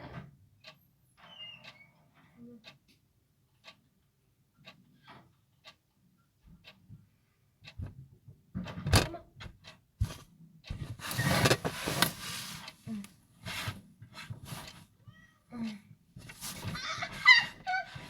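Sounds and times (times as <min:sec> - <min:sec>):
clock ticking: 0:02.6 - 0:02.9, 0:03.5 - 0:07.0, 0:07.6 - 0:08.0, 0:08.6 - 0:13.1, 0:15.5 - 0:18.0
knocks and rubbing noises: 0:10.0 - 0:12.7, 0:16.2 - 0:18.0.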